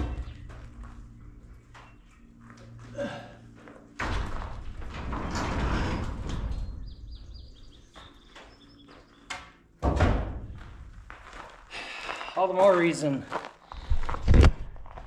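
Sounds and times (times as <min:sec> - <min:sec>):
garage door rumbling along track: 0:03.9 - 0:08.6.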